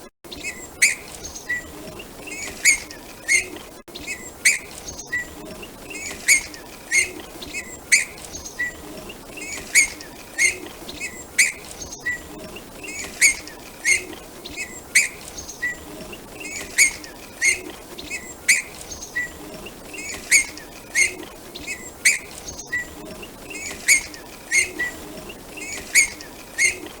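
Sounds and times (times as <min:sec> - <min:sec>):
small songbird chirping: 0:00.3 - 0:27.0.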